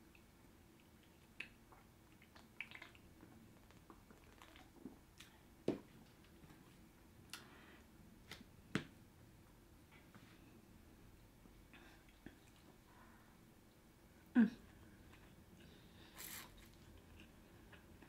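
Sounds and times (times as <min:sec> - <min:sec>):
chewing noodles: 0:00.7 - 0:05.4.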